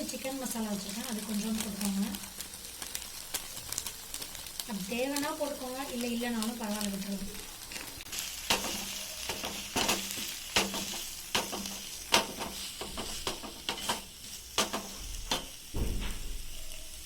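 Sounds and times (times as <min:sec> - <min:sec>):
frying hiss: 0:00.0 - 0:17.0
spoon scraping a pan: 0:07.7 - 0:15.6.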